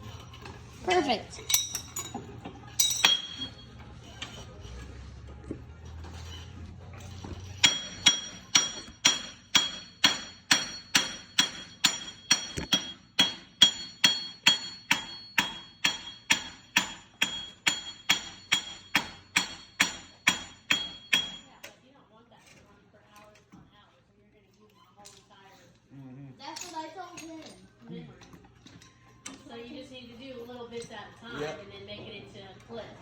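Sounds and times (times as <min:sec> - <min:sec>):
hammer striking steel: 0:02.8 - 0:03.6, 0:07.6 - 0:21.6.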